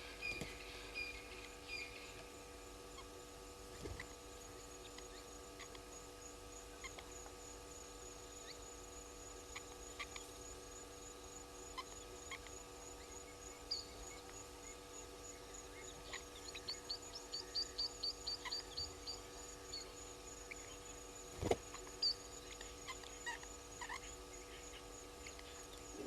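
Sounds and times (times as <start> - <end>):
bird chirps: 0.0 - 2.2, 11.8 - 26.0
low steady hum: 0.0 - 26.0
pulsing insect trill: 0.0 - 26.0.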